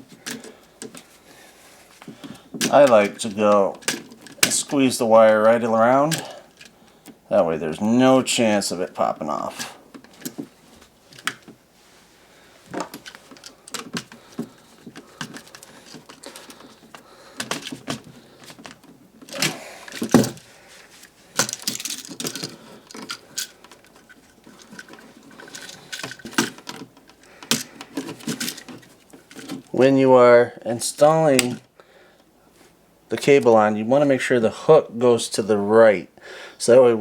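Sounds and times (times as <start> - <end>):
handling knocks: 2.0 - 6.8, 12.6 - 29.8.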